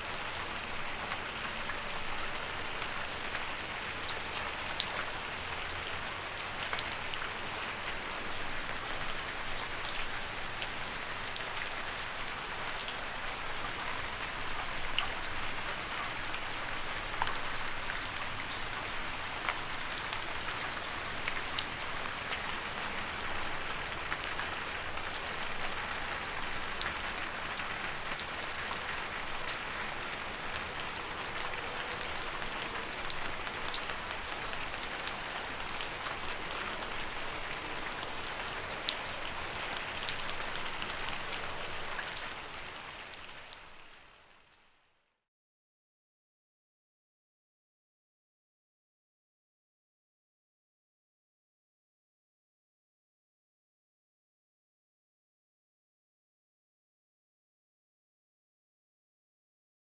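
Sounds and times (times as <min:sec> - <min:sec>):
steady rainfall: 0:00.0 - 0:44.6.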